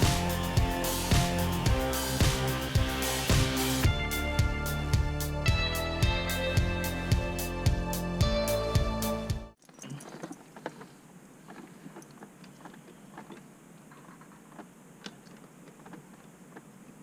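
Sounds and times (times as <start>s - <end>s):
music: 0.0s - 9.6s.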